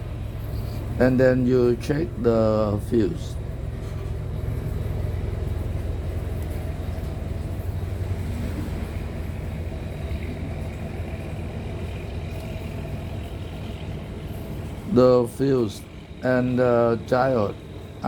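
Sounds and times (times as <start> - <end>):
low background rumble: 0.0 - 18.0.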